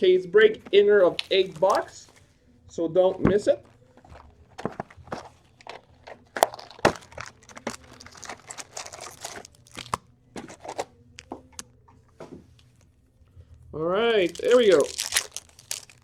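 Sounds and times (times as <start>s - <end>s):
packaging being torn and crinkled: 1.0s - 1.9s, 6.3s - 10.9s, 14.2s - 16.0s.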